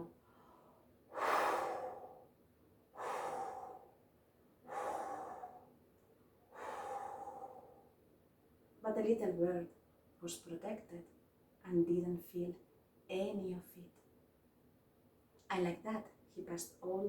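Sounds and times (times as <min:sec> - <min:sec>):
person blowing whooshing breaths: 0:01.1 - 0:02.3, 0:03.0 - 0:04.0, 0:04.7 - 0:05.7, 0:06.5 - 0:07.9.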